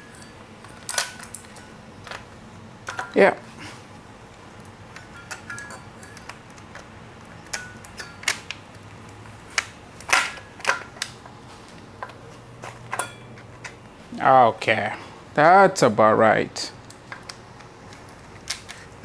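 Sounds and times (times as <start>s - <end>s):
metal tools clinking: 0.0s - 14.3s.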